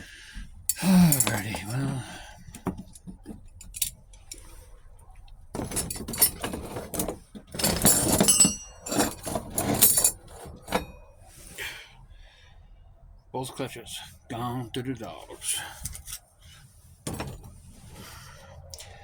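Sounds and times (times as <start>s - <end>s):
metal plates clinking and clattering: 5.6s - 11.0s
metallic ring: 7.6s - 11.0s.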